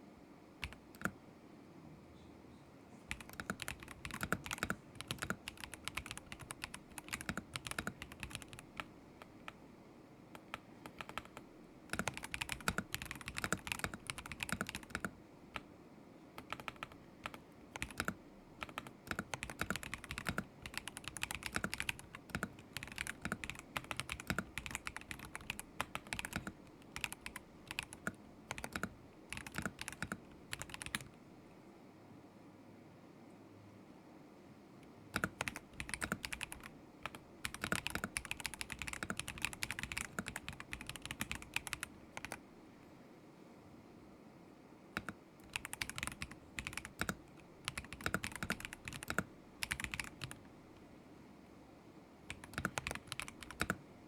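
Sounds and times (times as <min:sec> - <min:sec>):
mechanical keyboard typing: 0:00.6 - 0:01.2, 0:03.1 - 0:09.6, 0:10.4 - 0:15.7, 0:16.4 - 0:31.2, 0:35.1 - 0:42.4, 0:45.0 - 0:50.4, 0:52.3 - 0:53.8.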